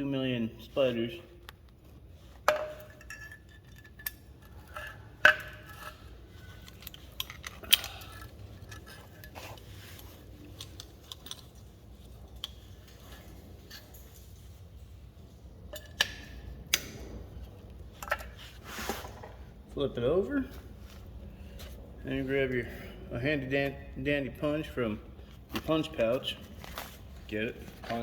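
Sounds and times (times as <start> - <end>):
metal tools clinking and clanking: 2.4 - 11.8.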